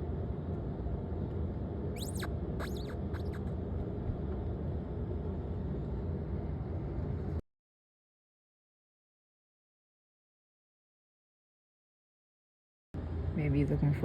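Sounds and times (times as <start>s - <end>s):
steady low hum: 0.0s - 7.4s, 13.0s - 14.0s
high squeaky chirps: 2.0s - 3.5s.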